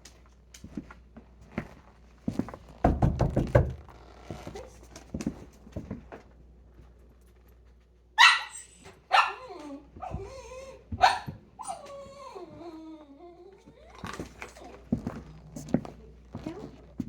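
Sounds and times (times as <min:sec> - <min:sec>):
dog barking: 0:08.2 - 0:10.2, 0:11.0 - 0:11.8
dog yipping: 0:08.2 - 0:13.0
dog whining: 0:08.2 - 0:15.6.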